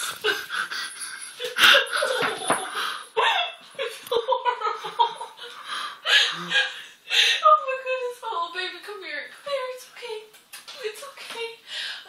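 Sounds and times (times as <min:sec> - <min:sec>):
people laughing and giggling: 0:00.0 - 0:06.7.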